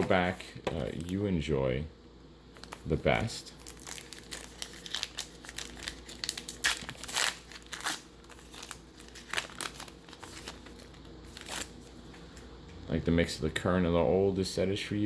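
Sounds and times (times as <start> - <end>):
foil wrapper crinkling: 0.8 - 1.2, 2.5 - 12.1.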